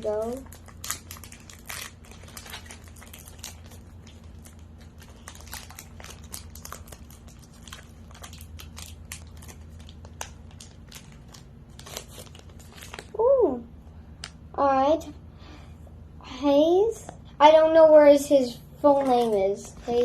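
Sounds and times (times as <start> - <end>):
wrapper crinkling: 0.0 - 13.3.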